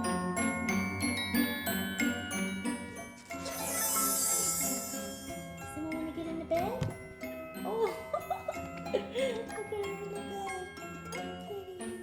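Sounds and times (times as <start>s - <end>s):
mallet percussion tune: 3.2s - 7.6s.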